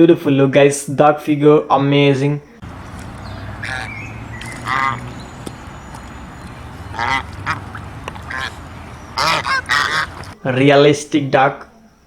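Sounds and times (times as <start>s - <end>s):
duck quacking: 2.6s - 10.4s.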